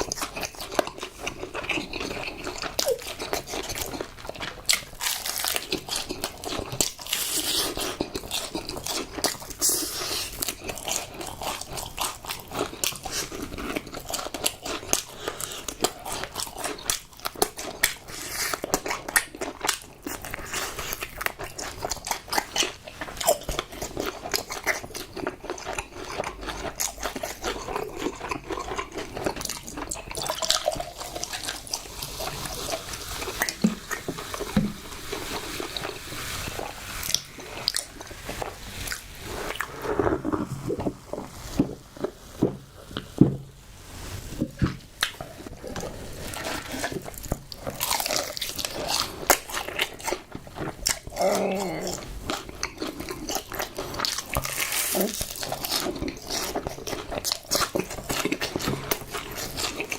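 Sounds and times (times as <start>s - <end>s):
person chewing crunchy food: 0.0s - 59.9s
wet mouth sounds: 25.7s - 43.2s, 44.6s - 59.9s.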